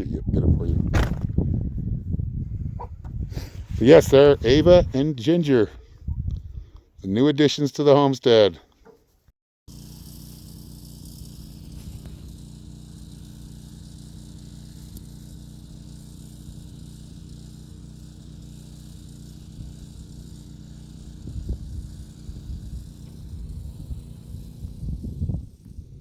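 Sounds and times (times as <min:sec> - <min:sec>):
low motor hum: 0:09.7 - 0:26.0.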